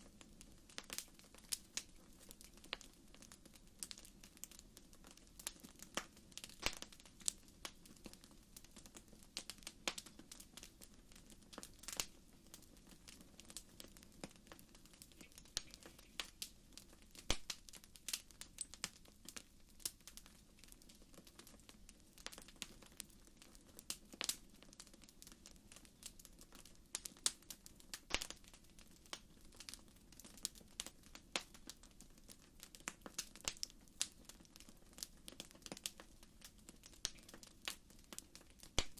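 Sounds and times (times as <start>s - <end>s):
campfire crackling: 0.0s - 38.9s
fire pops and snaps: 0.0s - 38.9s.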